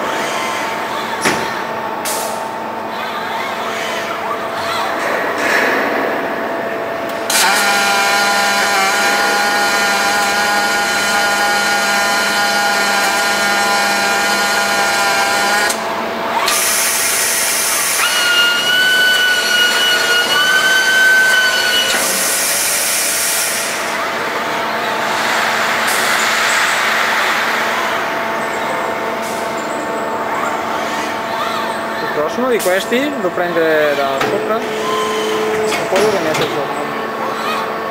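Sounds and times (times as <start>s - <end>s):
welding robot whine: 16.5s - 23.1s.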